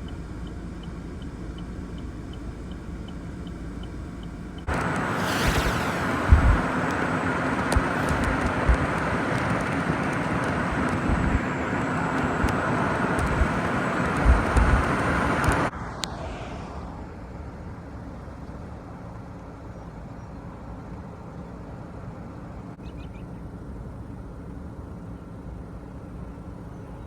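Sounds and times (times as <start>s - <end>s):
steady low hum: 0.0s - 17.8s
vehicle road and wind noise: 0.0s - 27.0s
low thumps: 4.7s - 7.1s.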